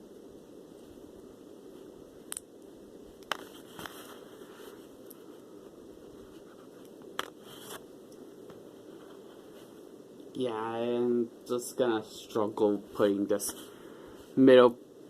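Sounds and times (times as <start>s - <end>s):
short rustle: 3.4s - 5.4s.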